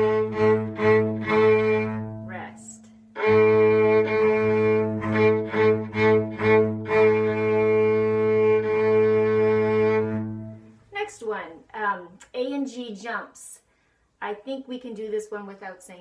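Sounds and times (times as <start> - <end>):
cello and violin bowing: 0.0 - 10.7.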